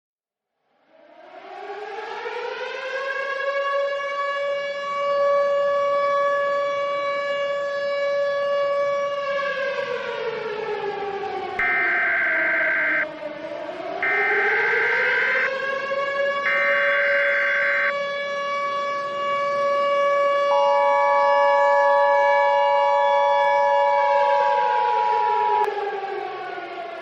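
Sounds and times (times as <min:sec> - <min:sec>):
civil defense siren wailing: 0:01.3 - 0:27.0
screeching digital data bursts: 0:11.6 - 0:13.0, 0:16.5 - 0:17.9
two-tone attention signal: 0:11.6 - 0:13.0, 0:14.0 - 0:15.5, 0:16.5 - 0:17.9.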